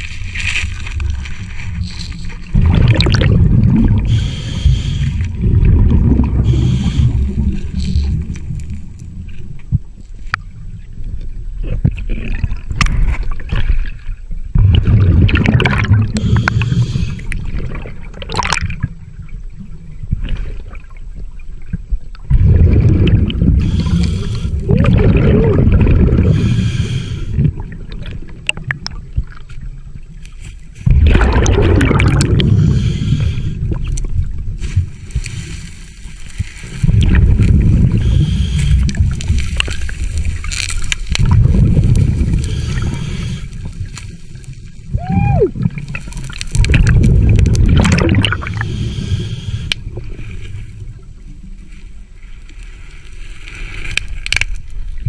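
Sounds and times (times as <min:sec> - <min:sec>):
gurgling rush of bubbles: 0:00.0 - 0:09.5, 0:11.5 - 0:29.8, 0:30.8 - 0:51.6
quiet underwater crackling: 0:00.0 - 0:55.0
diver breathing through regulator: 0:03.9 - 0:05.4, 0:06.4 - 0:08.0, 0:16.2 - 0:17.4, 0:23.5 - 0:25.2, 0:26.1 - 0:27.5, 0:32.0 - 0:33.8, 0:37.5 - 0:40.0, 0:41.9 - 0:43.8, 0:47.9 - 0:49.9.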